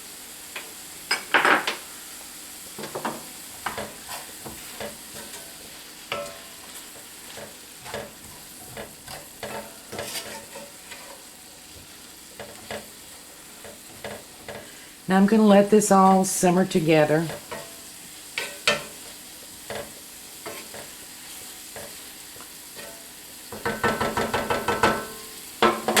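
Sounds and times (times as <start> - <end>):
food sizzling: 0.0 - 26.0
utensil scraping a skillet: 2.8 - 14.9, 17.2 - 25.1.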